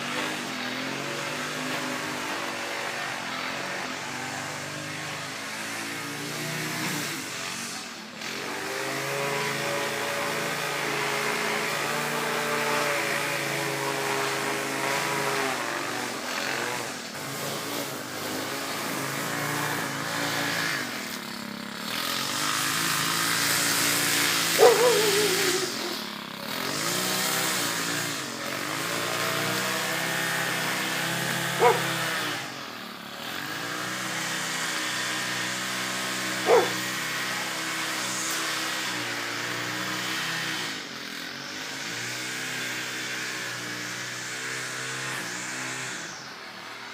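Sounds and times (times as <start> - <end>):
lawn mower engines running: 0.0 - 46.9
dog barking: 24.6 - 26.0, 31.5 - 32.0, 36.4 - 36.8.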